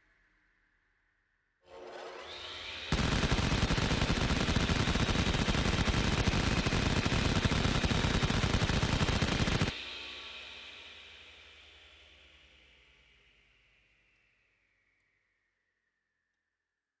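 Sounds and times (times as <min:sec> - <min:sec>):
machine gun firing: 0:02.9 - 0:09.7.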